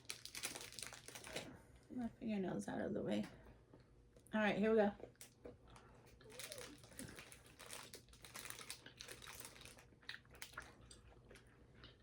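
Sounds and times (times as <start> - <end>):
candy packet crinkling: 0.0 - 1.5, 6.2 - 10.7.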